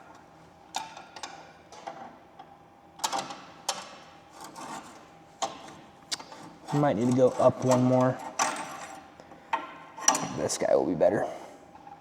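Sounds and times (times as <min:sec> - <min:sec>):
metal hardware clinking and scraping: 0:04.4 - 0:09.1.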